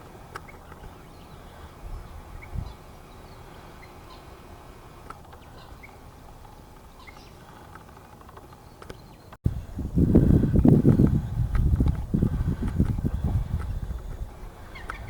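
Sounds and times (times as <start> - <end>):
outdoor background hiss: 0.0 - 15.0
faint bird chirps: 5.3 - 9.4.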